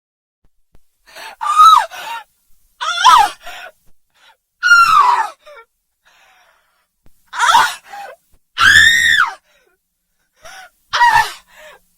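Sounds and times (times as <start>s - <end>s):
woman screaming: 1.4s - 1.9s, 2.8s - 3.4s, 4.6s - 5.4s, 7.4s - 7.8s, 8.6s - 9.4s, 11.0s - 11.4s.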